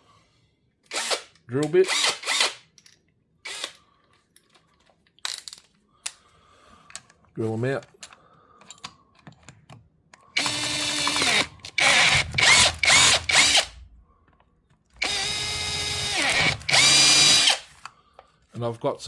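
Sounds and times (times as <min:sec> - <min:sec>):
power drill whining: 0:00.9 - 0:01.2, 0:01.9 - 0:02.6, 0:03.4 - 0:03.8, 0:10.3 - 0:13.8, 0:15.0 - 0:17.9.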